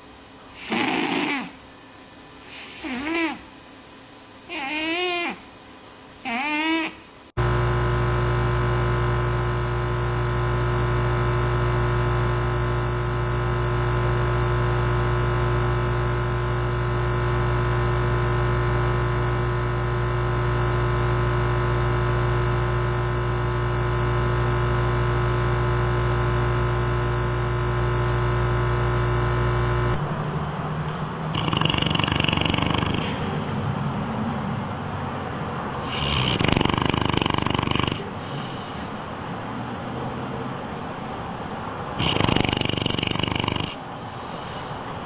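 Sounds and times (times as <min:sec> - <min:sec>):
animal whistling snore: 0:00.6 - 0:01.6, 0:08.9 - 0:10.8, 0:11.4 - 0:17.4, 0:18.2 - 0:20.7, 0:22.3 - 0:24.2, 0:26.5 - 0:28.4, 0:31.3 - 0:33.2, 0:35.8 - 0:38.0, 0:42.0 - 0:43.8
steady low hum: 0:07.0 - 0:31.4.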